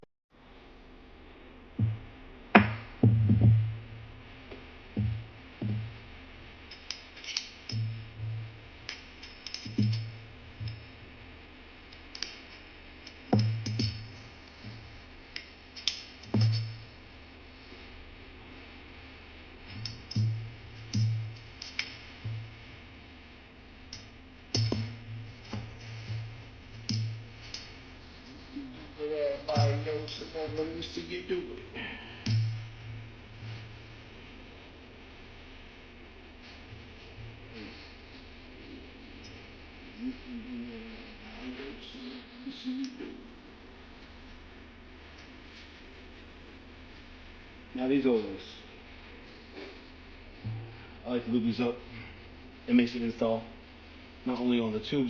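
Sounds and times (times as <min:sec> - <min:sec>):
drum machine thumps and clicks: 0:01.8 - 0:06.2, 0:07.7 - 0:11.0, 0:13.1 - 0:14.9, 0:15.8 - 0:16.9, 0:19.7 - 0:22.8, 0:23.9 - 0:28.4, 0:29.5 - 0:30.9, 0:32.2 - 0:33.7.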